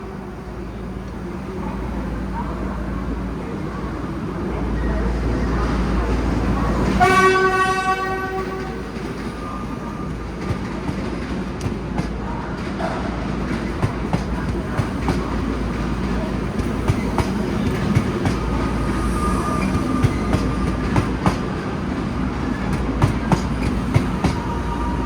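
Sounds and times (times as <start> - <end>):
low rumble of train: 0.0 - 25.0
train horn blast: 7.0 - 9.0.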